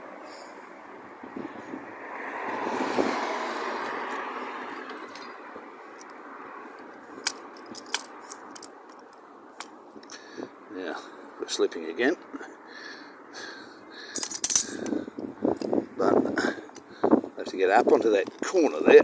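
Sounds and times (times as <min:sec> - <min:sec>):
metallic clicks and clinks: 0:04.7 - 0:06.2, 0:07.2 - 0:10.2, 0:14.1 - 0:15.0.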